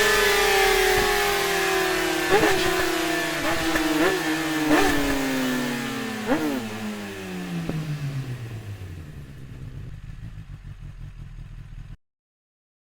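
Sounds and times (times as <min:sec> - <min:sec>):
motorcycle engine settling to idle: 0:06.8 - 0:12.0.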